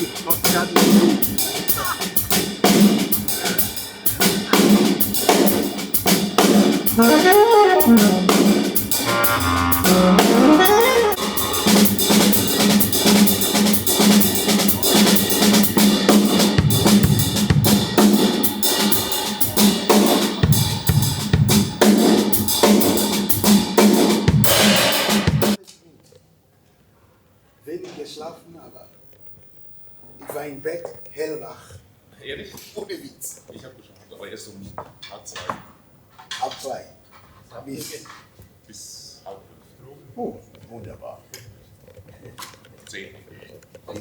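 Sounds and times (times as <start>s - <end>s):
drum kit: 0.0s - 25.6s
big band playing: 6.9s - 14.2s.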